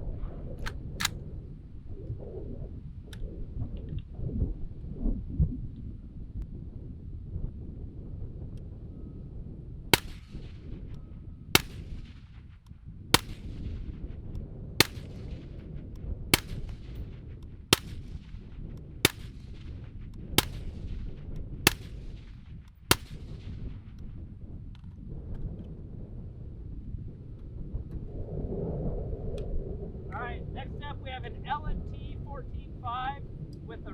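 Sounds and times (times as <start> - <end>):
wind rumble on microphone: 0.0 - 33.9
suppressed rifle shots: 0.6 - 1.4, 10.0 - 24.1.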